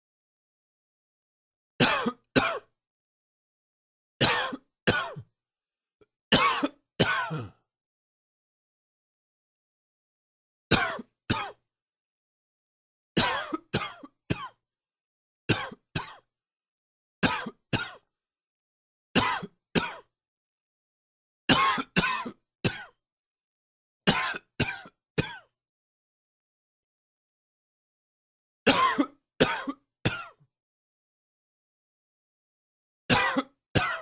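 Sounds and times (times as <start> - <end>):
man coughing: 1.8 - 2.7, 4.2 - 5.2, 6.3 - 7.6, 10.7 - 11.6, 13.2 - 14.6, 19.2 - 20.1, 21.5 - 23.0, 28.7 - 30.4, 33.1 - 34.0.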